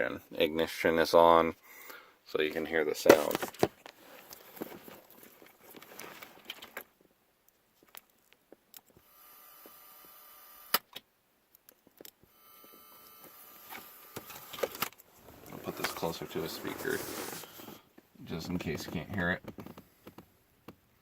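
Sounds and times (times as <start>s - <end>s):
high-pitched whine from car speakers: 9.0s - 10.8s, 12.3s - 14.8s.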